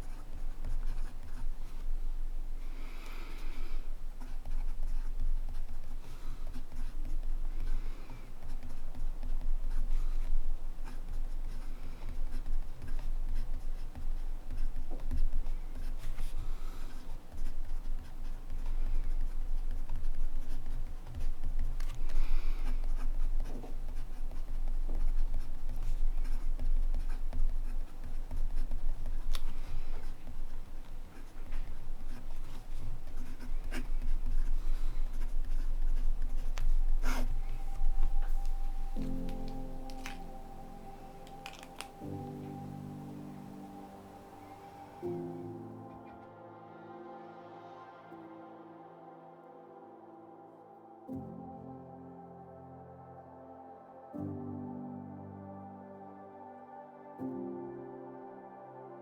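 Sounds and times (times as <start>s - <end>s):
pen nib scratching on paper: 0.0s - 45.2s.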